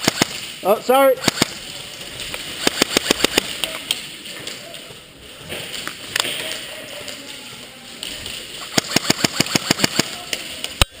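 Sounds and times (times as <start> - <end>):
airsoft gun firing: 0.0 - 0.6, 1.2 - 1.6, 2.6 - 3.6, 8.6 - 10.3.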